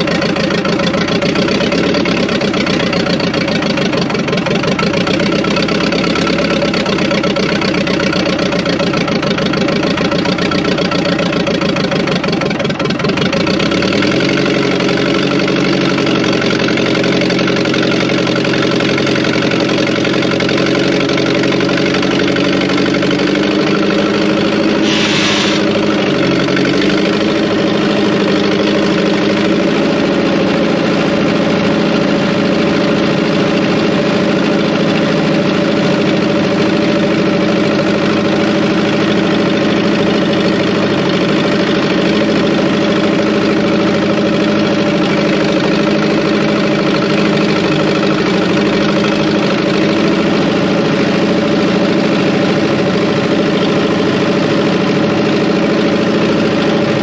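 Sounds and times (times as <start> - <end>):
engine idling: 0.0 - 57.0
brief hiss: 24.8 - 25.8.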